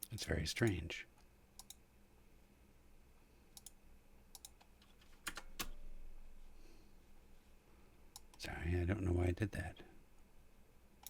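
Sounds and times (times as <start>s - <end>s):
keyboard and mouse clicks: 1.6s - 1.8s, 3.6s - 5.8s.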